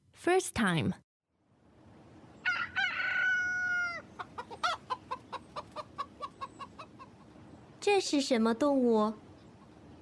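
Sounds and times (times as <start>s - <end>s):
rooster crowing: 2.4s - 4.9s
chicken clucking: 3.9s - 7.4s.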